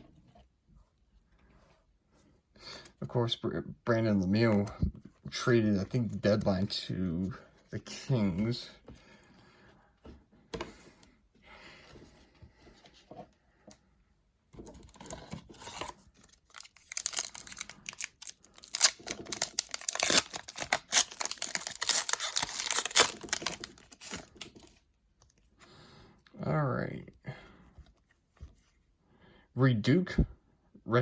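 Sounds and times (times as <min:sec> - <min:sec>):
foil wrapper crinkling: 0:16.2 - 0:24.7.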